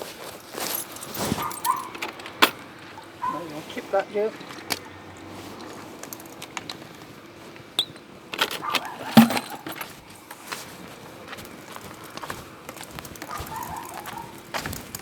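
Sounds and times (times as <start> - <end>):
objects clinking and knocking: 0.2 - 3.4, 5.6 - 7.0, 7.8 - 10.4.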